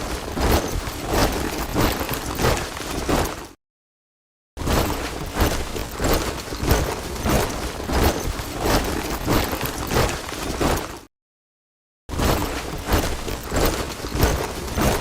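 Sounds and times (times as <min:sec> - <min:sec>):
soldiers marching in step: 0:00.0 - 0:03.6, 0:04.8 - 0:11.1.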